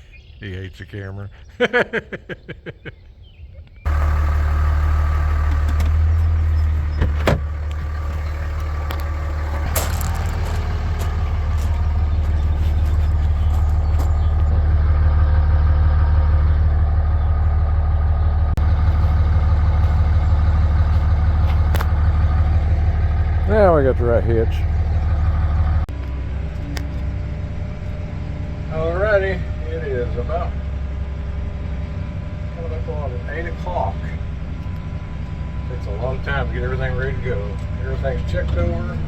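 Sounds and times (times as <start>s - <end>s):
vehicle engine humming: 0.0s - 39.0s
sharp clunks: 6.8s - 8.2s, 8.9s - 12.4s.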